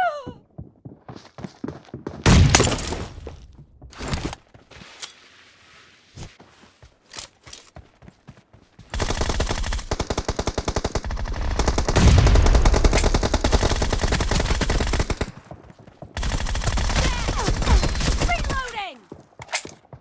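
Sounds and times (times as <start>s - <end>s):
video game automatic gunfire: 8.9s - 15.4s, 16.2s - 18.7s.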